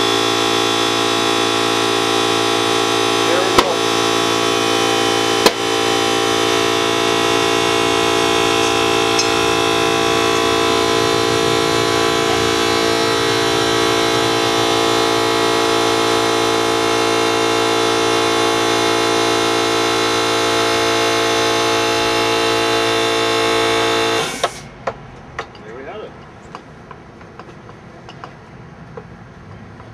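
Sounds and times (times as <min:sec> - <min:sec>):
air compressor humming: 0:00.0 - 0:24.8.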